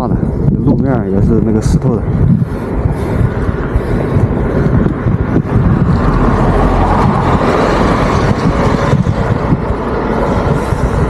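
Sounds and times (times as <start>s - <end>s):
steady low rumble: 0.0s - 11.0s
vehicle passing by: 4.2s - 11.0s.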